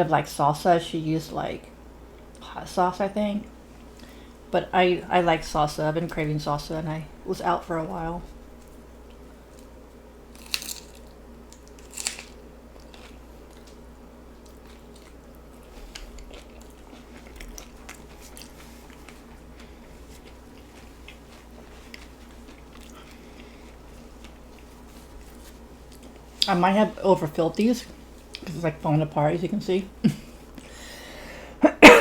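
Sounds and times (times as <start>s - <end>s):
chewing with small crackles: 8.2s - 26.6s
loud crunches of biting: 10.3s - 13.8s.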